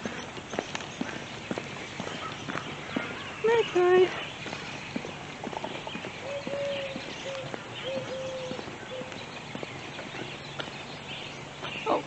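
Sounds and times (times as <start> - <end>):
footsteps walking: 0.0 - 11.9
distant drawn-out call tones: 5.8 - 9.3.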